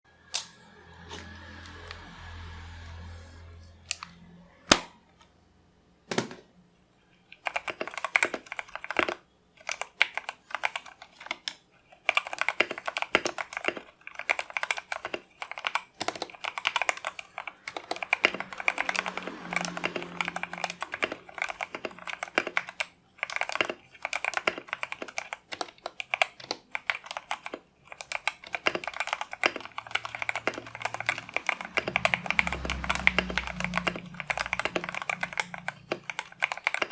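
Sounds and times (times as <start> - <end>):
mechanical keyboard typing: 7.3 - 36.9.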